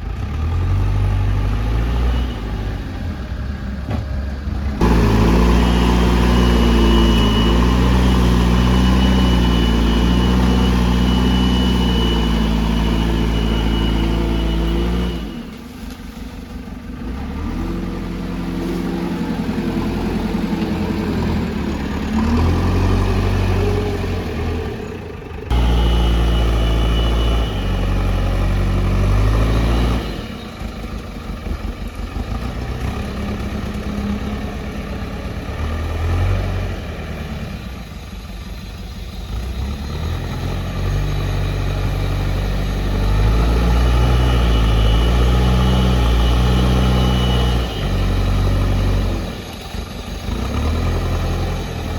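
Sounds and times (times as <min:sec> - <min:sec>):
diesel engine revving under load: 0:00.0 - 0:51.9.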